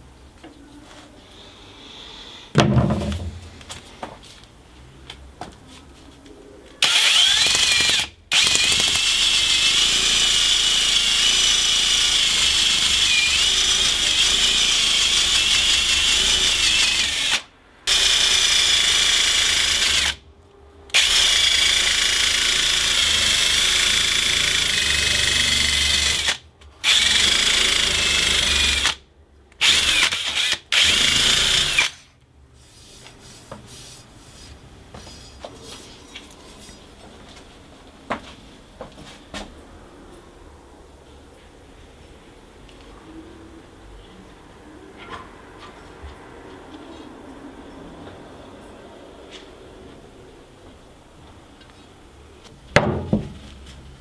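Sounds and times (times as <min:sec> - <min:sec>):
electric power tool whining: 0:06.8 - 0:20.2, 0:20.9 - 0:29.0, 0:29.6 - 0:32.1.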